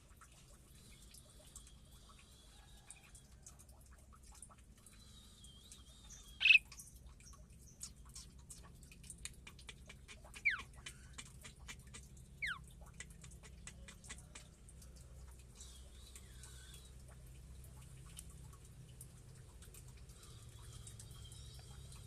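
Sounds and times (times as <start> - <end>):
caged birds calling: 4.9 - 8.7, 9.4 - 14.4, 15.4 - 17.2.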